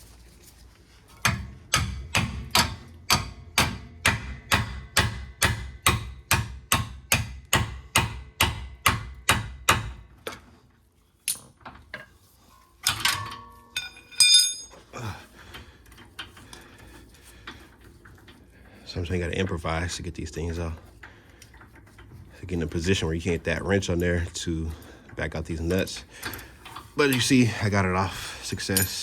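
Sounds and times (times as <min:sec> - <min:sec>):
hammer striking metal: 0:01.2 - 0:10.0.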